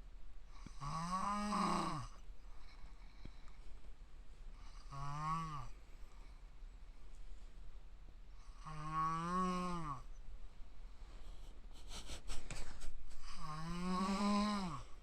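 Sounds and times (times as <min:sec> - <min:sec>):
man snoring loudly: 0:00.7 - 0:02.1, 0:04.8 - 0:05.7, 0:08.5 - 0:10.0, 0:13.4 - 0:14.8.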